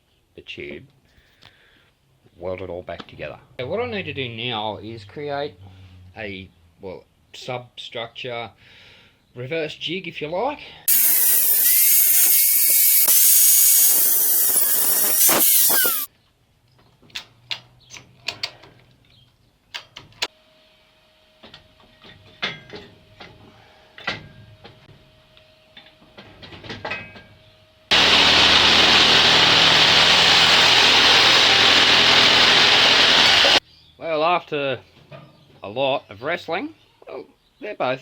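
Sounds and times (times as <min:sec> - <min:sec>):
power tool whining on metal: 0:10.9 - 0:16.1, 0:27.9 - 0:33.6.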